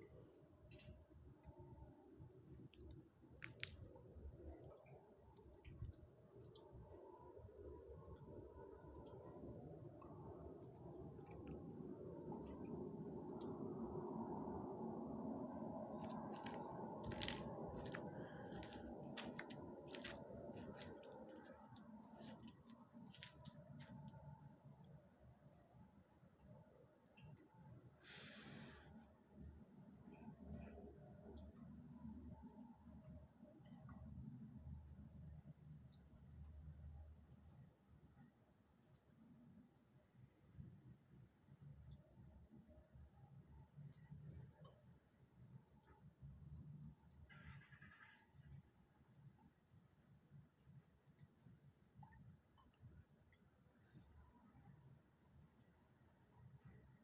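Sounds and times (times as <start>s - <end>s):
cricket chirping: 0.0s - 57.0s
faint low rumble: 0.2s - 24.7s.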